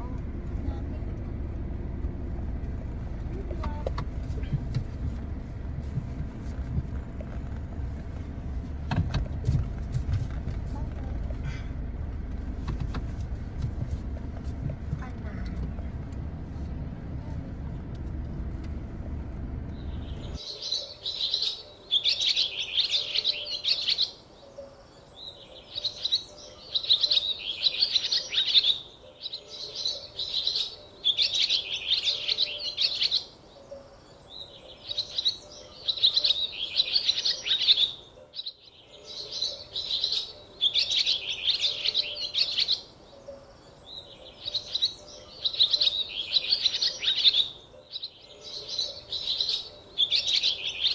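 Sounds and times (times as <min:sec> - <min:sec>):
low rumble: 0:00.0 - 0:20.4
bird chirping: 0:19.7 - 0:50.9.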